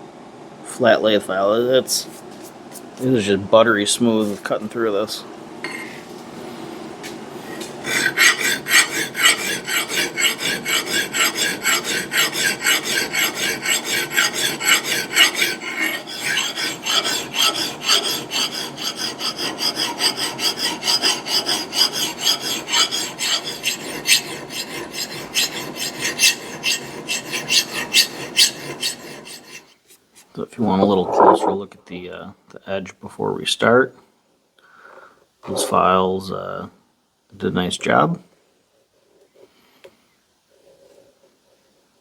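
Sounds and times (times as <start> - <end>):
file strokes on steel: 7.5 - 29.8.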